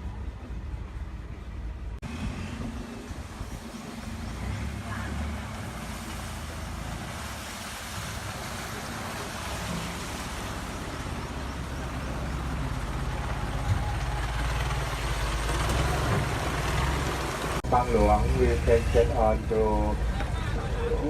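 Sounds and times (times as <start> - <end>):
boat engine running: 0.0 - 21.0
rushing water and air: 0.0 - 21.0.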